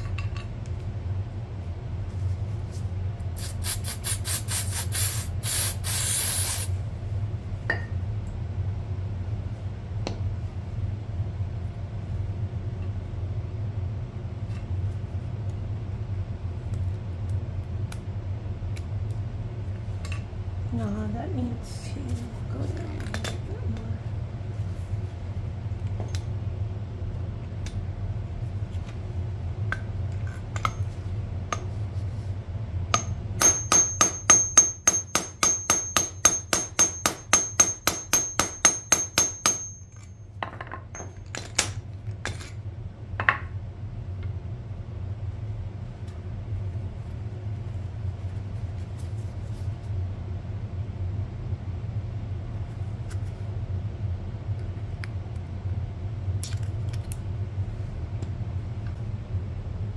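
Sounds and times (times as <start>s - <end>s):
steady low hum: 0.0s - 59.9s
metal tapping with ringing tone: 32.9s - 41.4s.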